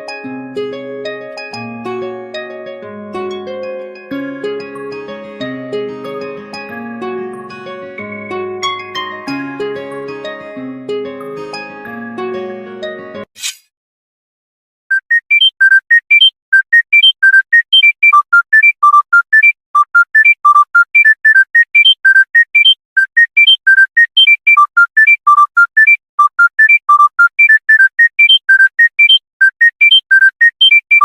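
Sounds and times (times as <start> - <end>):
monophonic phone ringtone beeps: 8.0 - 8.4, 14.9 - 31.0.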